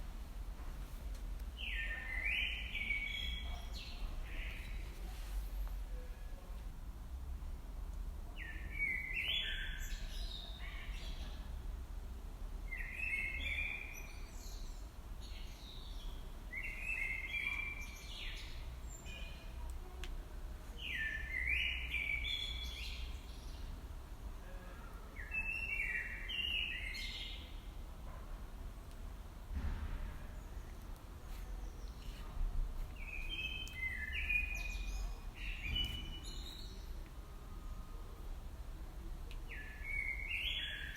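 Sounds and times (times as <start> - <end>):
songbird singing: 1.4 - 5.0, 8.4 - 11.5, 12.7 - 20.0, 20.6 - 23.8, 25.2 - 27.8, 30.4 - 38.3, 39.0 - 40.9.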